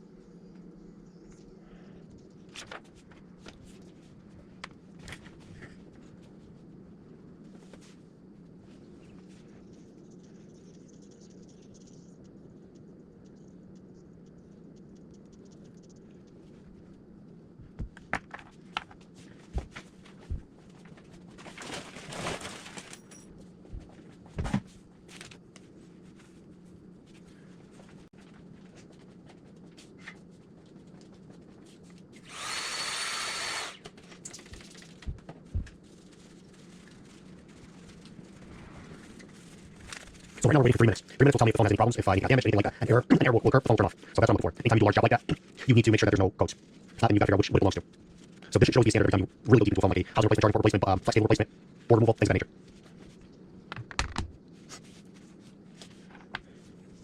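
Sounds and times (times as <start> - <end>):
steady low hum: 0.0 - 57.0
small motor whirring: 32.2 - 33.8.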